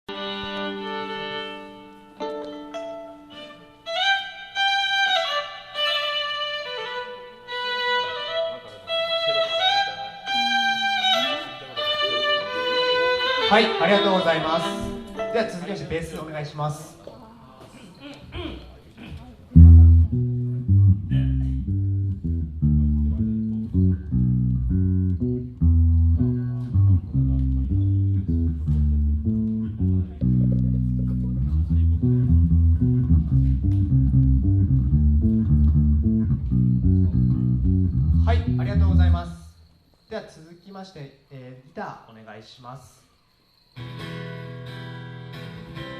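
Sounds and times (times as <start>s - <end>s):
solo violin melody: 0.1s - 15.6s
bass guitar riff: 19.6s - 39.5s.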